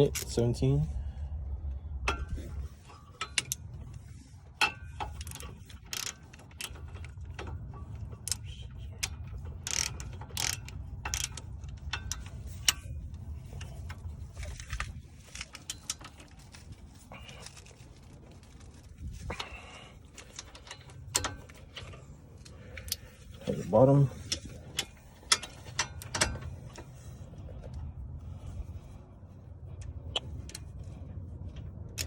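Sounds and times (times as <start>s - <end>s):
ratchet wrench clicking: 4.6s - 12.9s.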